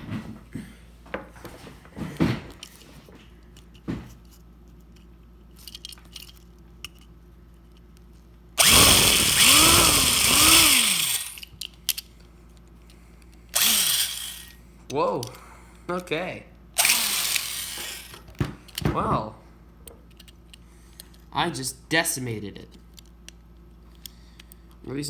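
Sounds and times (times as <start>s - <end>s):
power drill drilling into metal: 8.6s - 11.4s, 13.6s - 14.5s, 16.8s - 18.2s.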